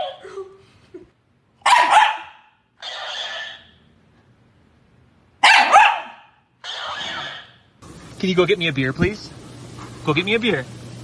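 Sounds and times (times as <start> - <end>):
dog barking: 1.6 - 3.6, 5.4 - 7.4.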